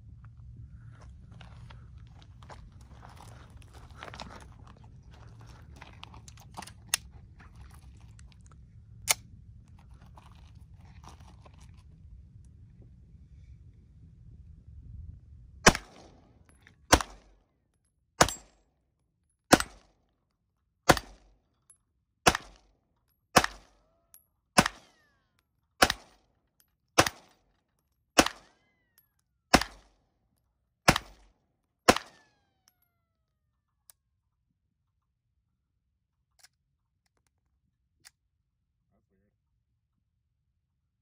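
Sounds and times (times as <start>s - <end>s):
pistol shots: 15.6s - 16.2s, 16.9s - 17.3s, 18.2s - 18.5s, 19.5s - 19.9s, 20.9s - 21.3s, 22.2s - 22.6s, 23.4s - 23.8s, 24.6s - 25.0s, 25.8s - 26.2s, 27.0s - 27.3s, 28.2s - 28.6s, 29.5s - 29.9s, 30.9s - 31.3s, 31.9s - 32.4s.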